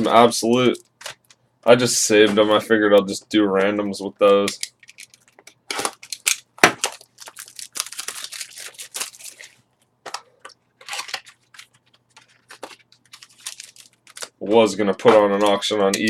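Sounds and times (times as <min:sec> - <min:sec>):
packaging crackling and crinkling: 0:04.6 - 0:15.7.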